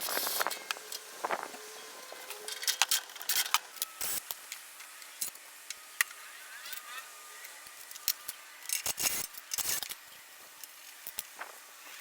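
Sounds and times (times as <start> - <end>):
tools scraping: 7.9 - 10.0.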